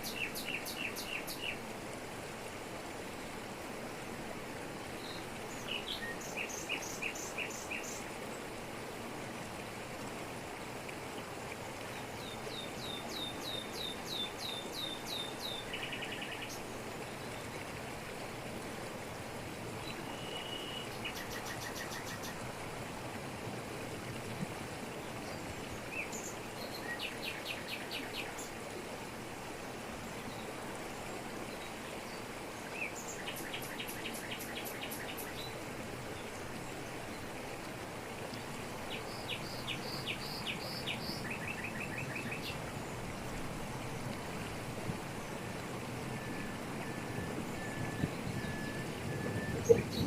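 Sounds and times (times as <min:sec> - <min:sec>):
birds calling repeated notes: 0:46.8 - 0:50.0.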